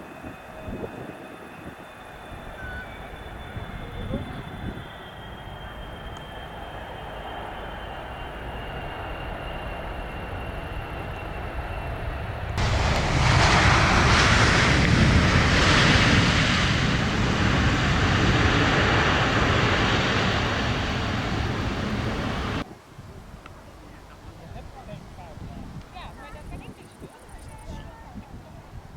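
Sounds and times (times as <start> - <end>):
jet engine noise with high whine: 0.0 - 22.7.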